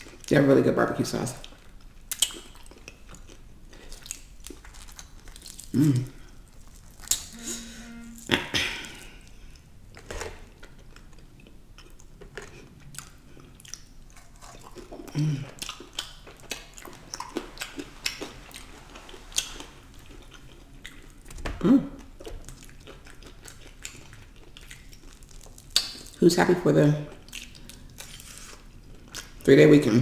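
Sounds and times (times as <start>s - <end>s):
chewing and biting food: 1.4s - 7.3s, 9.9s - 21.4s, 22.0s - 26.2s, 27.1s - 29.5s.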